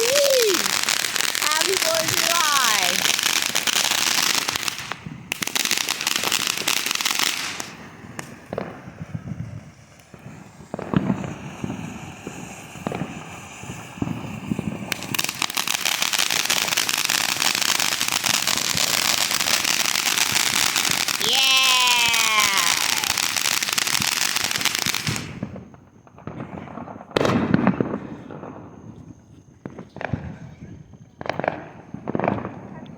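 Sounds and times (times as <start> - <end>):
firework bang: 0.0 - 29.0
fireworks crackling: 0.0 - 32.9
firework pops: 4.5 - 19.6, 23.9 - 32.9.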